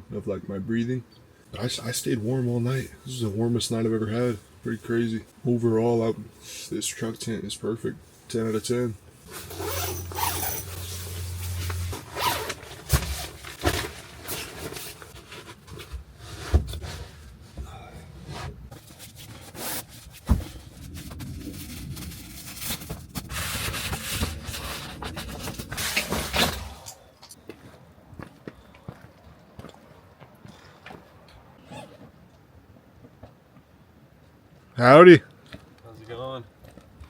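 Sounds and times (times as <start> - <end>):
zipper: 9.2 - 13.3
tent fabric rustling: 9.2 - 17.5, 18.3 - 27.1.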